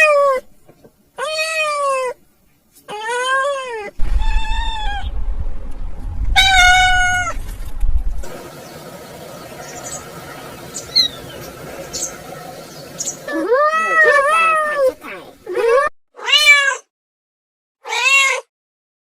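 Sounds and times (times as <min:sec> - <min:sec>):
kitten meowing: 0:02.9 - 0:05.1, 0:06.4 - 0:07.3, 0:16.2 - 0:16.9, 0:17.8 - 0:18.5.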